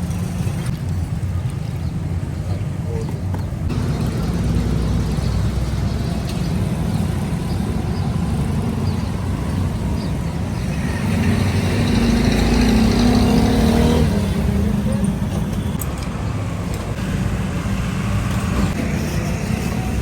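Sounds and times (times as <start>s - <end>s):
steady engine hum: 0.0s - 20.0s
low motor rumble: 3.7s - 12.2s.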